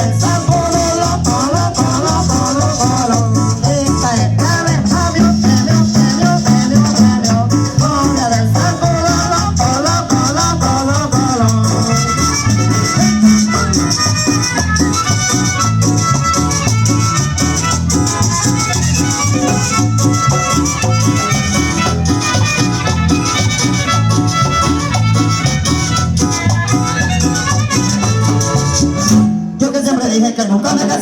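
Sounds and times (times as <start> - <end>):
instrumental cumbia music: 0.0 - 31.0.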